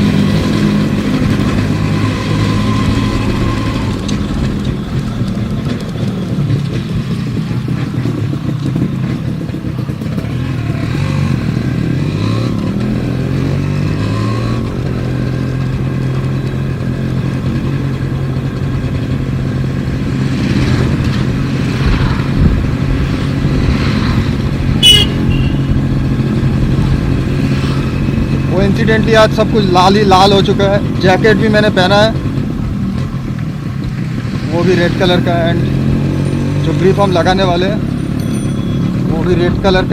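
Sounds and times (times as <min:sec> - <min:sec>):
motorcycle engine running: 0:00.0 - 0:39.9
short high-pitched beep: 0:24.8 - 0:25.7.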